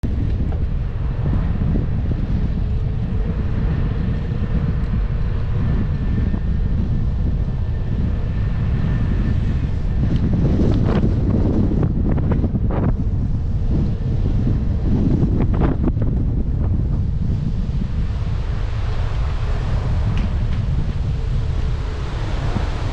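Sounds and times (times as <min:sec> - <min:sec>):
wind buffeting microphone: 0:00.0 - 0:22.9
faint steady drone: 0:00.1 - 0:22.9.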